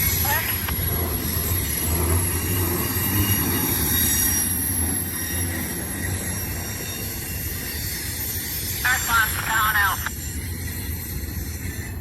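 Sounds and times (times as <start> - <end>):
high-pitched wheel squeal: 0.0 - 8.8
steel wheels rumbling on rail: 0.0 - 12.0.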